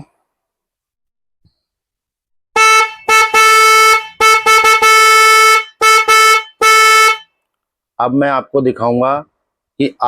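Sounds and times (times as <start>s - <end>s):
electric horn blasts: 2.6s - 7.3s.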